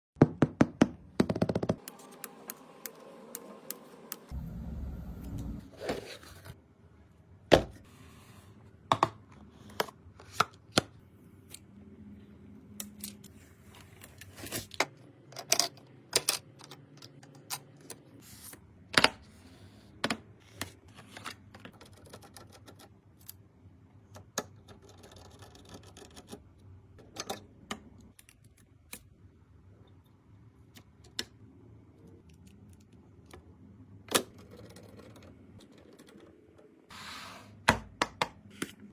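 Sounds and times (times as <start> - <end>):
low rumble: 4.3 - 5.7.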